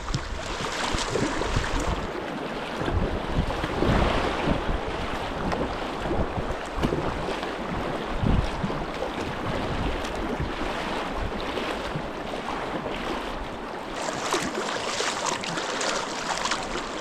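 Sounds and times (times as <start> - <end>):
wind buffeting microphone: 0.0 - 13.7
river current rushing: 14.0 - 17.0.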